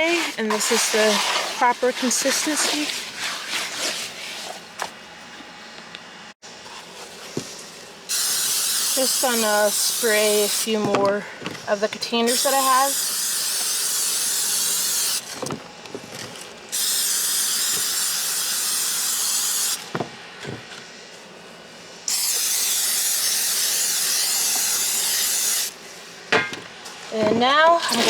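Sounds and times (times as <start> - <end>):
spray can hissing: 8.1 - 10.7, 12.3 - 15.2, 22.1 - 25.7.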